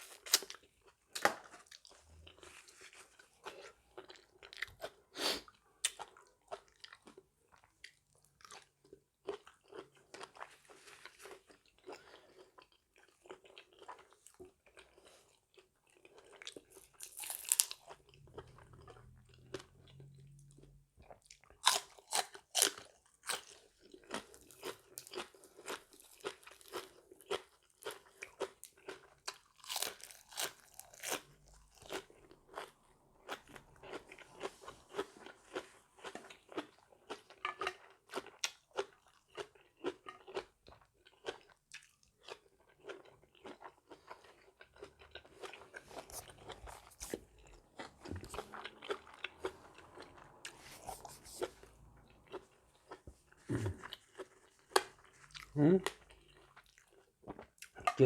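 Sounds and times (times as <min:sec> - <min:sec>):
person chewing and crunching food: 0:00.0 - 0:58.0.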